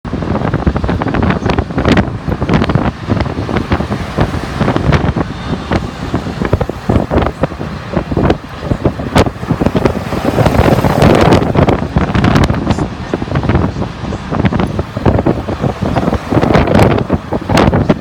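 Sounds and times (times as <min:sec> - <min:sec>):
moving vehicle rumble: 0:00.1 - 0:18.0
wind buffeting microphone: 0:00.1 - 0:18.0.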